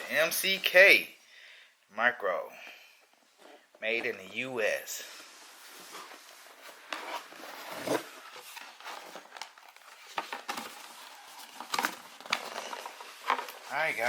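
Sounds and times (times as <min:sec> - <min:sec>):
packaging rustling: 0:05.5 - 0:14.0.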